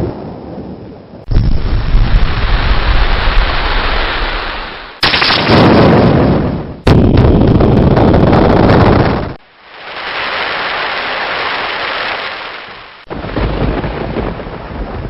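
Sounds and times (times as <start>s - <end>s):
thunderclaps rumbling: 0.0s - 15.0s.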